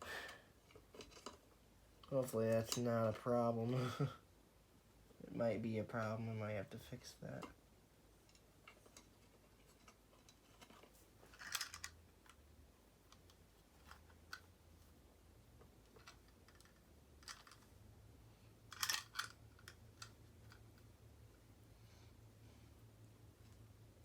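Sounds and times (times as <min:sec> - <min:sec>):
wires clicking and scraping: 0:00.6 - 0:03.8, 0:08.2 - 0:17.8, 0:18.5 - 0:21.4.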